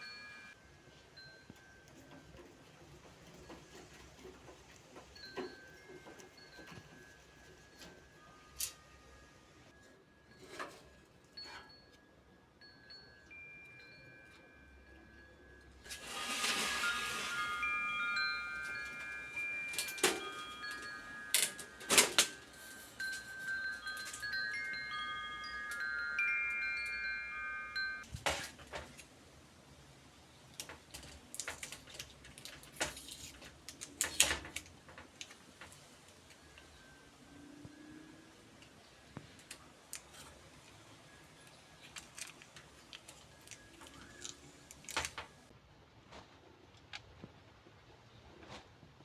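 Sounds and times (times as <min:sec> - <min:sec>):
bell-like chimes ringing: 0:00.0 - 0:00.6, 0:11.4 - 0:28.1
small metal parts clicking: 0:15.8 - 0:29.1, 0:30.5 - 0:36.7, 0:38.6 - 0:45.5.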